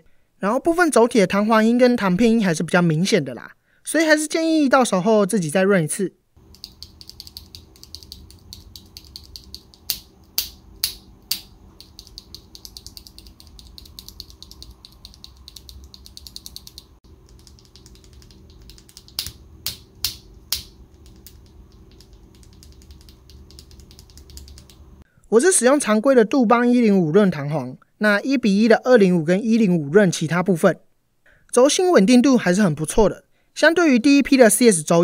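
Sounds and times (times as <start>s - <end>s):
mechanical keyboard clacking: 6.4s - 24.9s.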